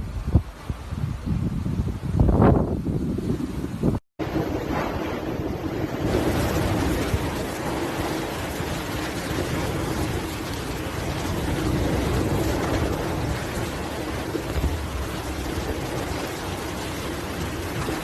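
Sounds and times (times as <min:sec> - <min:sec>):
hurricane wind: 0:00.0 - 0:18.0
rushing water: 0:03.7 - 0:18.0.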